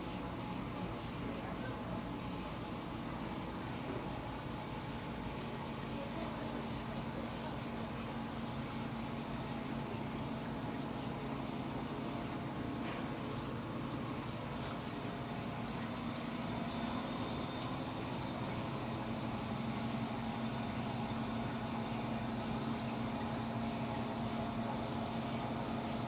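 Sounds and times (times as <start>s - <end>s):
steady machine hum: 7.0s - 26.0s.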